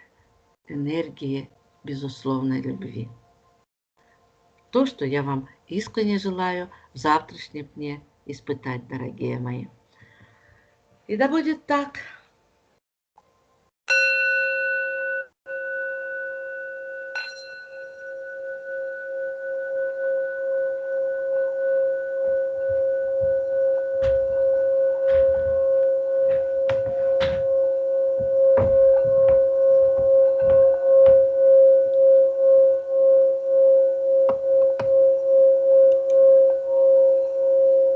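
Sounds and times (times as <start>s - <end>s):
singing bowl ringing: 13.9s - 37.9s
sharp knocks: 22.7s - 31.4s.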